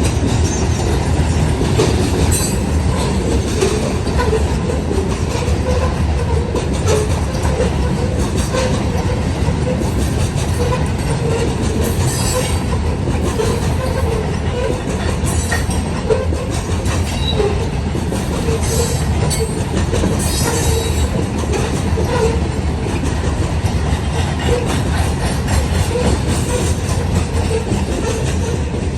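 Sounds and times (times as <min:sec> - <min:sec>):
rumble of steel wheels on rail: 0:00.0 - 0:28.9
wheel squeals and screeches: 0:20.2 - 0:21.1.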